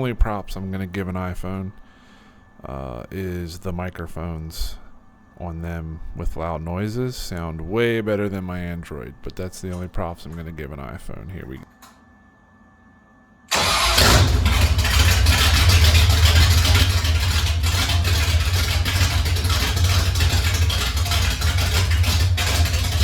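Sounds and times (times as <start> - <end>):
engine running with low rumble: 13.5 - 23.0.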